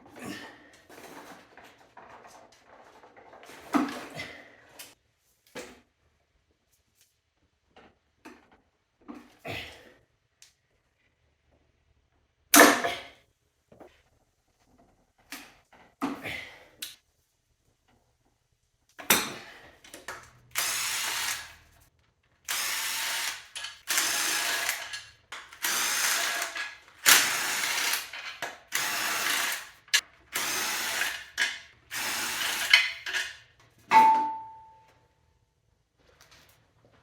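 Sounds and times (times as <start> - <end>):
power ratchet running in bursts: 20.5 - 21.6, 22.5 - 33.2.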